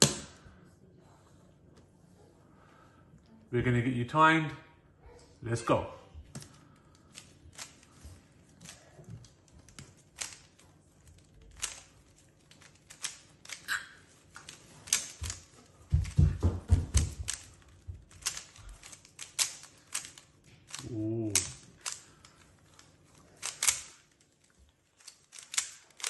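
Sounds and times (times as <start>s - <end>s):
puzzle cube clicking: 8.6s - 13.7s, 14.3s - 16.2s, 16.9s - 24.2s, 25.0s - 26.0s.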